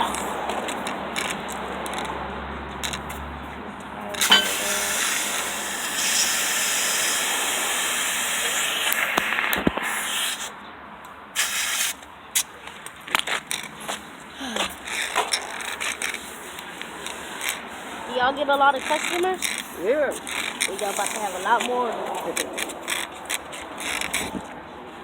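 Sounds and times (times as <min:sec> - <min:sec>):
compressed air hissing: 0:04.2 - 0:10.6, 0:11.3 - 0:12.5, 0:14.4 - 0:24.3.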